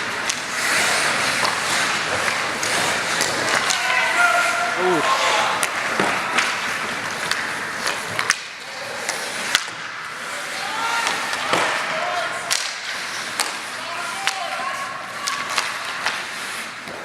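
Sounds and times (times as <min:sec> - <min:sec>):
hockey sticks clacking on puck: 0:00.0 - 0:17.0
skates scraping on ice: 0:00.0 - 0:17.0
distant shouts: 0:03.6 - 0:05.6.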